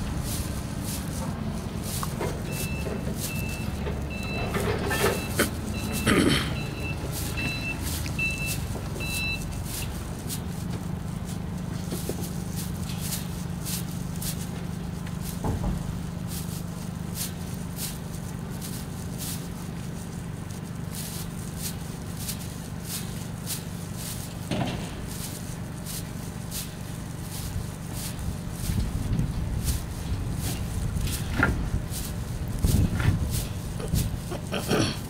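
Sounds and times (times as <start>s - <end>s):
low engine hum: 0.0s - 35.0s
reversing alarm beeps: 2.4s - 9.6s.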